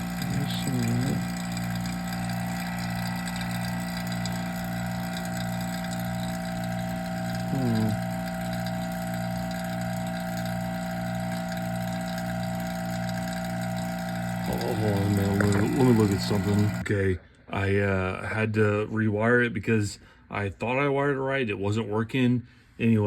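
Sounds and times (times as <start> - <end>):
vacuum pump humming: 0.0 - 16.9.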